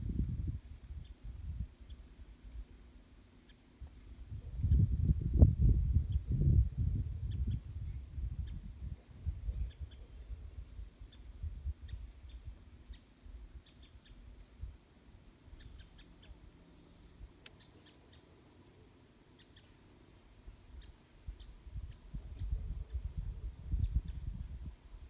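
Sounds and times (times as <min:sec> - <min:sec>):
birds chirping: 0:15.4 - 0:22.2.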